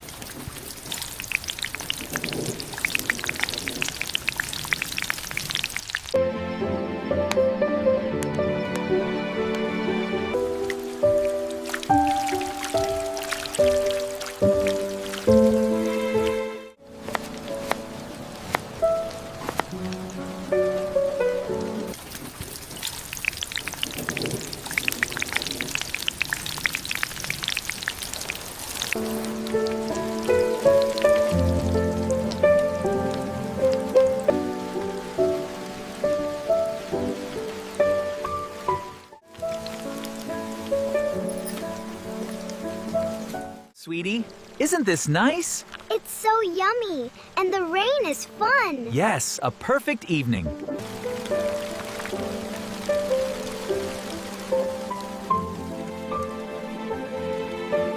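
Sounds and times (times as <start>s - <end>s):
raindrops ticking: 0.0s - 6.2s, 10.4s - 56.3s
rain hiss: 0.0s - 57.9s.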